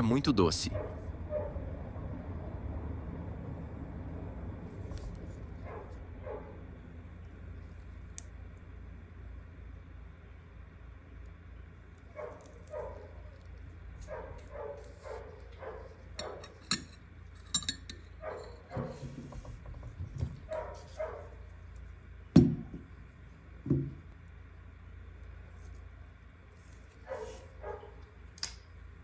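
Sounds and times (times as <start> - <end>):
glass clinks: 16.7 - 18.0.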